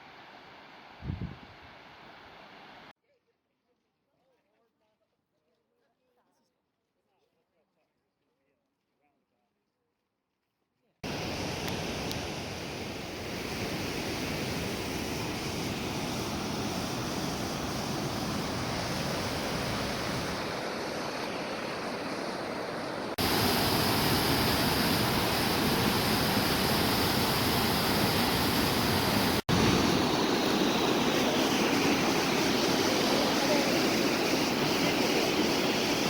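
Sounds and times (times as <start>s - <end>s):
water rushing: 11.0s - 36.0s.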